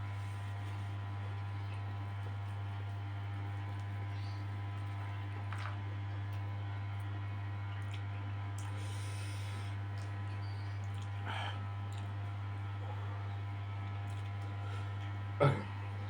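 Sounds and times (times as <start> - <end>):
chewing with mouth clicks: 7.7 - 9.0, 9.8 - 15.3.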